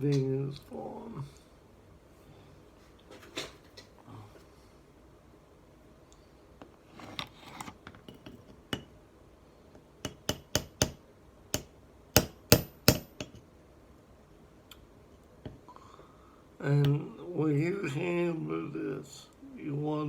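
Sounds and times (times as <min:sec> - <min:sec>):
hammer tapping on metal pin: 0:10.0 - 0:11.0, 0:11.6 - 0:13.4.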